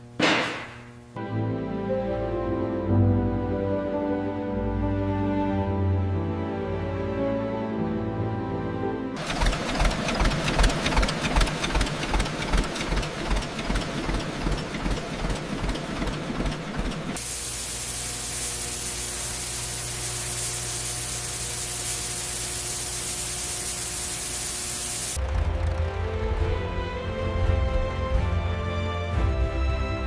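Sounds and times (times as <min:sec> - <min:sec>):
tractor engine slow pulse: 0:09.2 - 0:17.2
steady hiss with low hum: 0:17.2 - 0:25.2.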